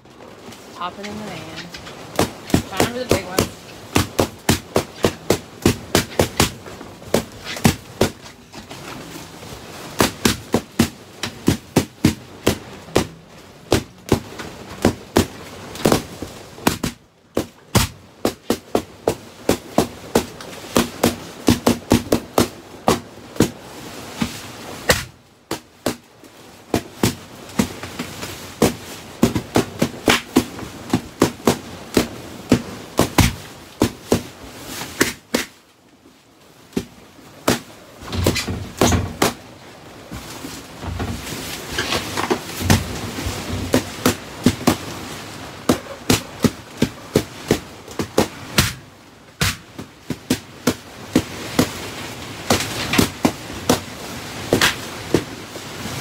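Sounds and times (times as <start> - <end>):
balloons rustling when handled: 0.0 - 56.0
balloons popping: 0.8 - 9.1.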